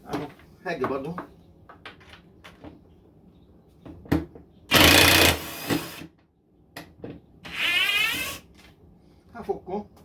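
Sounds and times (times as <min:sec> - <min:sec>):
impact driver hammering: 0:04.7 - 0:06.0.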